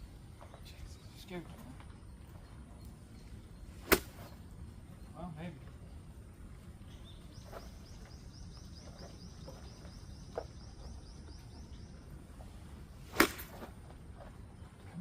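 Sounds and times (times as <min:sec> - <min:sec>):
golf club hitting ball: 0:03.8 - 0:04.3, 0:13.1 - 0:13.7.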